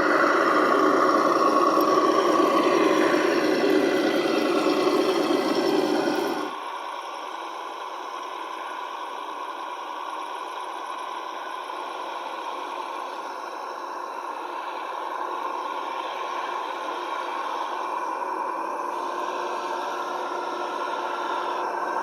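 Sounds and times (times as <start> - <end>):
rattle: 0.0 - 6.5
toy truck motor whir: 0.0 - 22.0.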